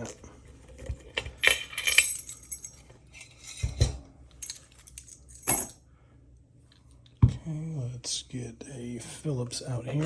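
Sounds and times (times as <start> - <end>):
padlock and tools metal clinks: 1.4 - 2.8.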